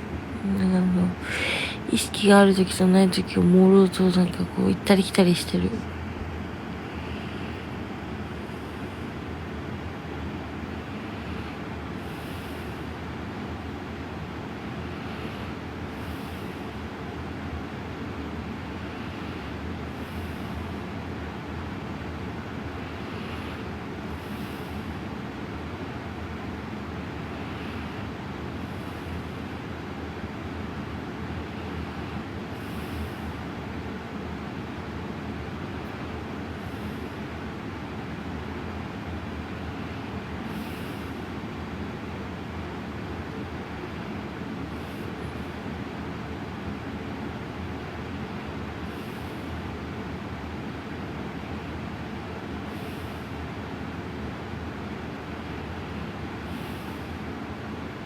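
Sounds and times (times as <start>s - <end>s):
low rumbling noise: 0.0s - 12.8s
steady background hiss: 0.0s - 58.0s
woman breathing slowly: 1.2s - 1.9s, 6.6s - 42.3s, 43.6s - 58.0s.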